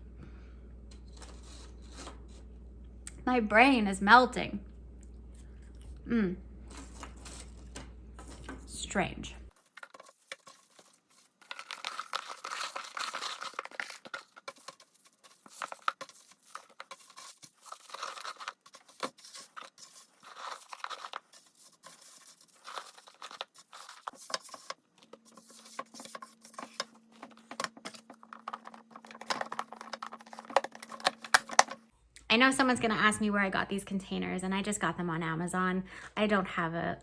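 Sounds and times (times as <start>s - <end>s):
faint steady hum: 0.0s - 37.0s
freeze-dried food crunching: 9.5s - 31.9s.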